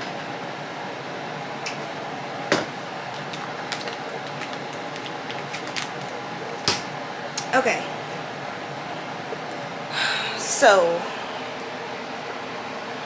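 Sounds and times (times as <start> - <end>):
air fryer fan hum: 0.0 - 13.0
kitchen clicks and knocks: 2.5 - 5.9.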